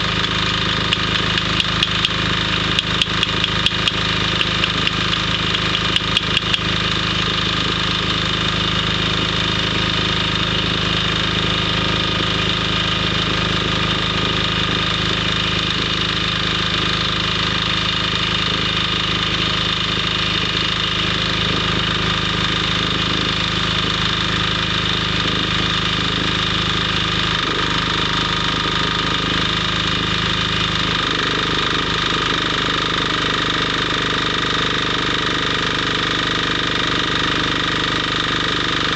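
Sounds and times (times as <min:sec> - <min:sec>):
welding arc burning: 0:00.0 - 0:11.1
sharp clicks: 0:00.2 - 0:06.7.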